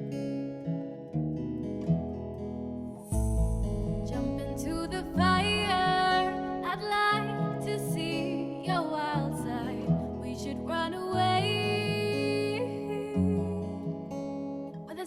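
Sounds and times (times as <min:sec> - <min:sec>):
instrumental music with bass and lead: 0:03.1 - 0:07.0.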